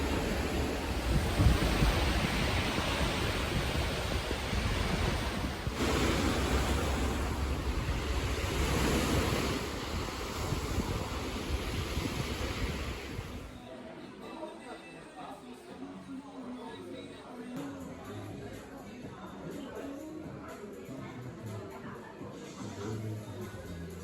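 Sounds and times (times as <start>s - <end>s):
wind buffeting microphone: 0.0s - 13.6s
outdoor rush of noise: 0.0s - 13.7s.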